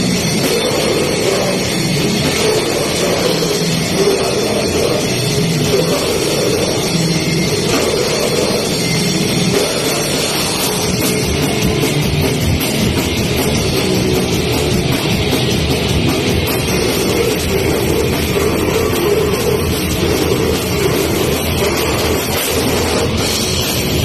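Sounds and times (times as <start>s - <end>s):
death metal band playing: 0.0s - 24.0s
distorted guitars: 0.0s - 24.0s
drum kit: 0.0s - 24.0s.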